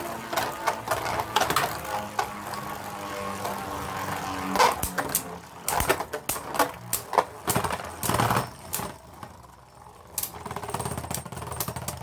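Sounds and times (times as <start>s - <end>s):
plastic and metal clacks: 0.0s - 2.7s, 4.5s - 9.4s
spinning tops clashing: 4.7s - 9.0s.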